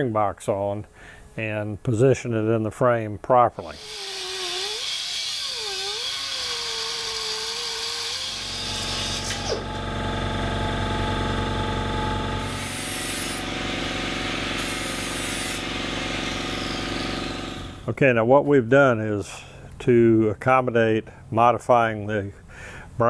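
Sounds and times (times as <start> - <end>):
power tool running: 3.6 - 17.9
falling squeal: 3.8 - 9.6.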